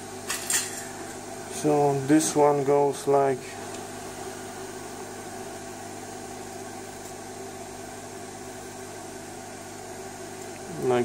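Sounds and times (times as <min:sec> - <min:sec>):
electrical hum: 0:00.0 - 0:11.0.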